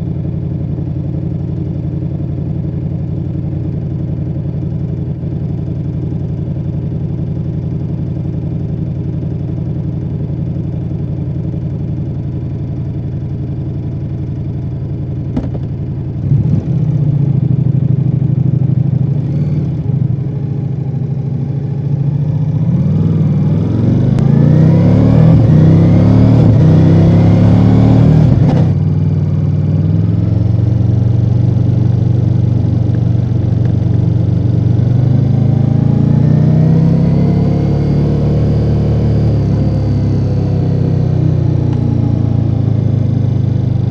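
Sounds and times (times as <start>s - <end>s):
motorcycle engine revving: 15.3s - 43.9s.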